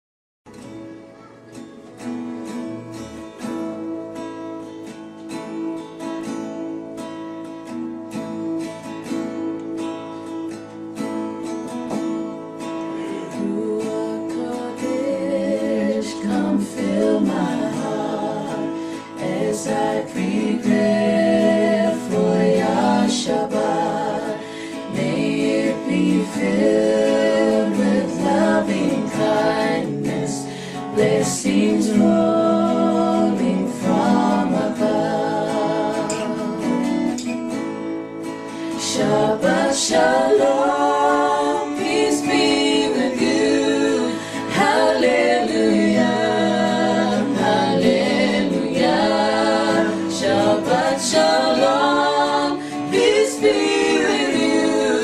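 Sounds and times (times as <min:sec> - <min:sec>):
guitar accompaniment: 0:00.5 - 0:55.0
person singing: 0:12.8 - 0:37.3, 0:38.5 - 0:55.0.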